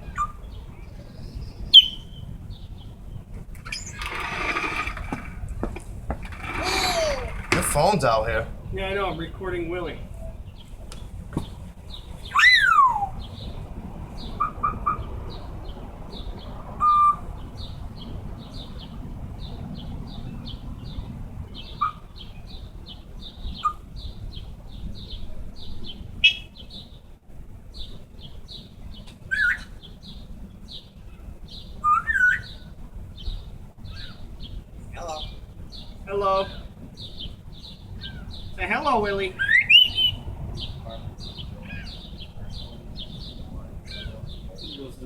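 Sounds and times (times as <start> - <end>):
parrot whistling and calling: 1.7 - 2.2, 12.3 - 13.2, 39.4 - 40.2.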